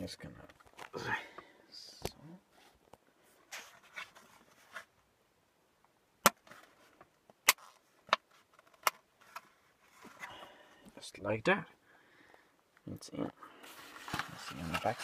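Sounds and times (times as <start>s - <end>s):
handling rustle: 13.5s - 15.0s.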